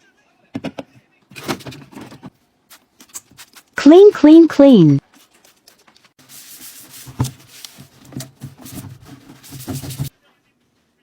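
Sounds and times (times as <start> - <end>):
hand scrubbing a surface: 6.2 - 10.1.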